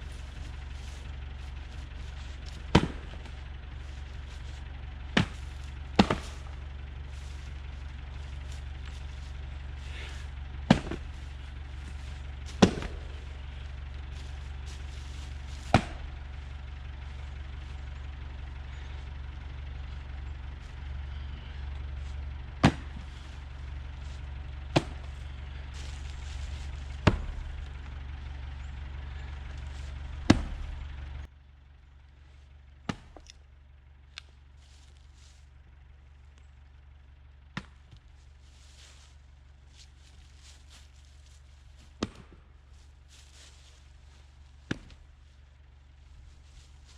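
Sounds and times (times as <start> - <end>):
firewood knocking: 0.0 - 30.8, 32.9 - 33.4, 41.8 - 42.4, 44.6 - 45.1
steady low hum: 0.0 - 46.9.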